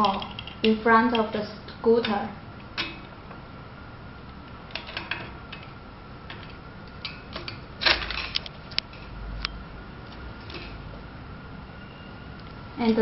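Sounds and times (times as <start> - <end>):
metal clicks and knocks: 0.0 - 1.3, 4.7 - 9.6.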